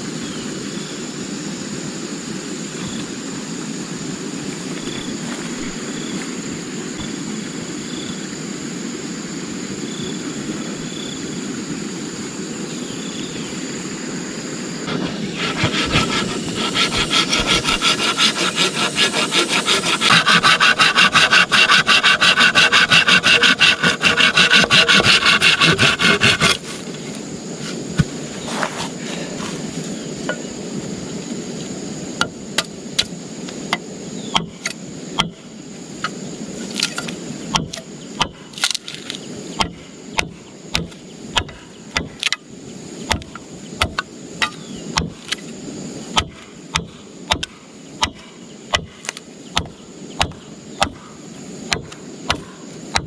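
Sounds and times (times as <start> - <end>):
sharp irregular knocks: 14.9 - 26.7, 33.7 - 35.4, 36.0 - 42.4, 43.1 - 45.4, 46.2 - 51.0, 51.7 - 53.0
hand saw cutting wood: 14.9 - 29.7.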